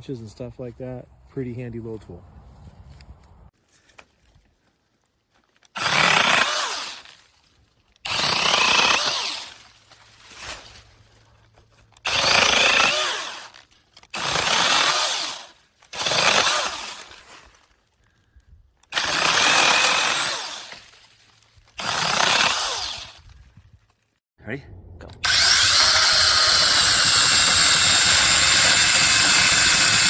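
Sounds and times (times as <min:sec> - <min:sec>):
mini chainsaw motor bursts: 0:05.7 - 0:07.2, 0:08.0 - 0:09.6, 0:12.0 - 0:17.2, 0:18.9 - 0:21.0, 0:21.7 - 0:23.3, 0:25.2 - 0:30.0.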